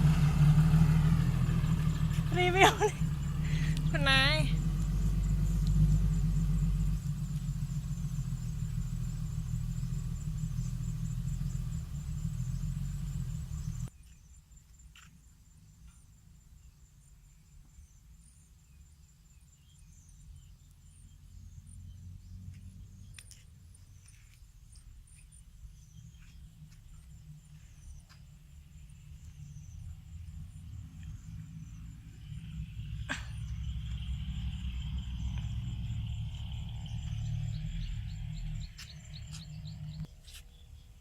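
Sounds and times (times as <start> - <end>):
diesel engine running: 0.0 - 13.9
distant engine rumble: 0.0 - 13.9, 21.0 - 41.0.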